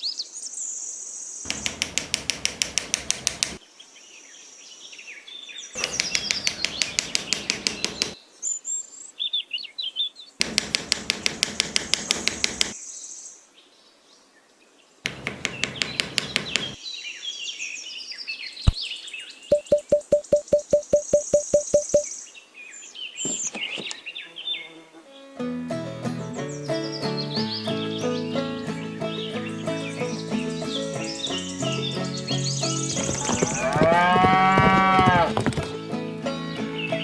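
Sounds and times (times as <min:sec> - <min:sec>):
rapid even tapping: 0:01.5 - 0:03.6, 0:05.8 - 0:08.2, 0:10.4 - 0:12.8, 0:15.1 - 0:16.8, 0:19.5 - 0:22.1
birds chirping: 0:05.8 - 0:08.2, 0:15.1 - 0:16.8.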